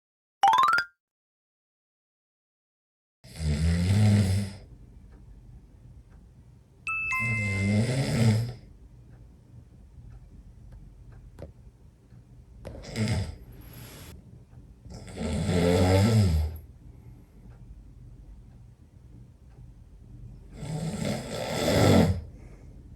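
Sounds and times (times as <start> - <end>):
two-note falling chime: 6.9 - 8.1
person snoring loudly: 15.1 - 16.6, 20.7 - 22.2.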